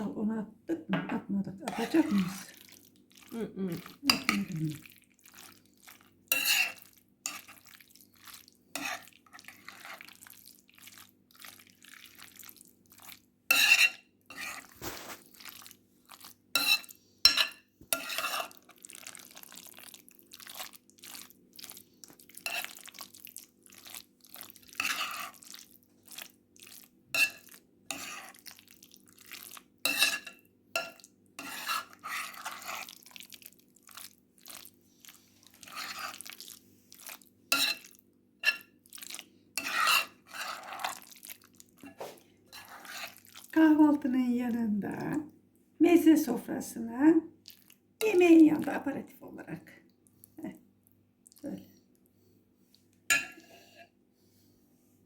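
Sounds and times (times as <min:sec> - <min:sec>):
spoon scraping and clinking bowl: 0:01.7 - 0:02.5, 0:03.8 - 0:04.5, 0:06.3 - 0:07.8, 0:08.7 - 0:10.2, 0:13.5 - 0:15.7, 0:16.5 - 0:18.7, 0:22.4 - 0:22.9, 0:24.7 - 0:25.5, 0:27.1 - 0:28.4, 0:29.4 - 0:33.0, 0:35.5 - 0:36.4, 0:37.1 - 0:38.7, 0:39.6 - 0:41.1, 0:41.8 - 0:43.2, 0:53.1 - 0:53.9.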